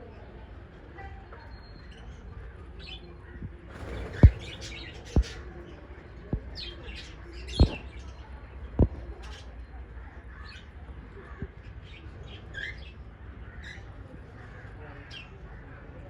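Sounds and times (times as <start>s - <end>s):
small parrots chirping: 3.8s - 5.3s
sharp low thumps: 3.8s - 5.4s.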